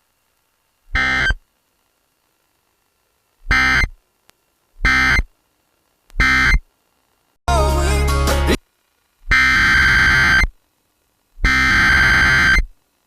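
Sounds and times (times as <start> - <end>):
buzzy digital data tones: 0.9 - 1.5, 3.4 - 4.0, 4.8 - 5.4, 6.2 - 7.2, 8.5 - 10.6, 11.4 - 12.8.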